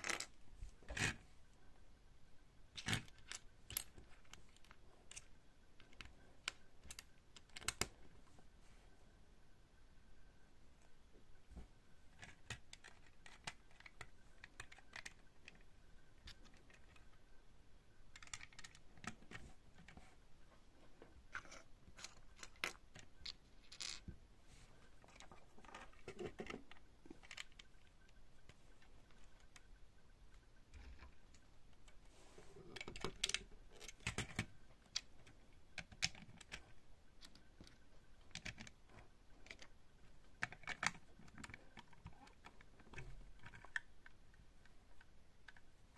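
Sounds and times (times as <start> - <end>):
plastic bricks clicking and rattling: 18.1 - 20.0, 21.3 - 24.1, 32.7 - 39.7.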